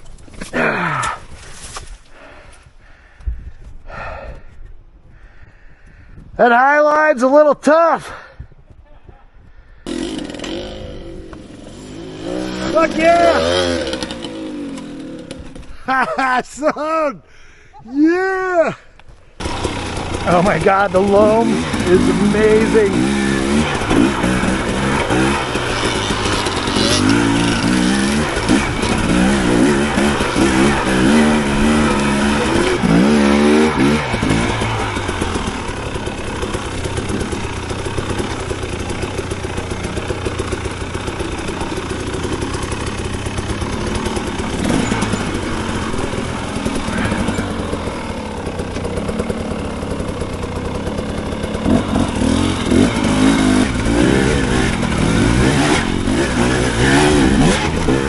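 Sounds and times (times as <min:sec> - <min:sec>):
dirt bike engine revving: 0:09.8 - 0:16.0, 0:19.4 - 0:58.0.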